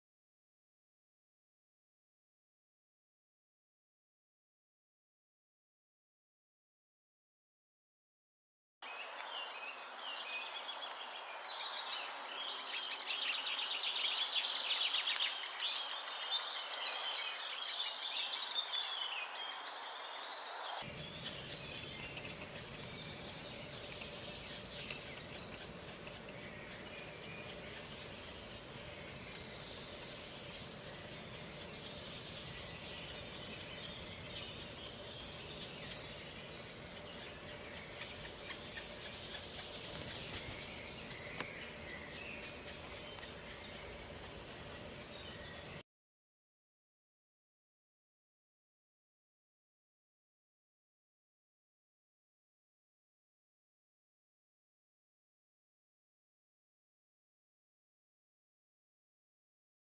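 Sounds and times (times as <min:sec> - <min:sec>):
nestlings chirping: 0:20.9 - 0:45.8
steady background hiss: 0:20.9 - 0:45.8.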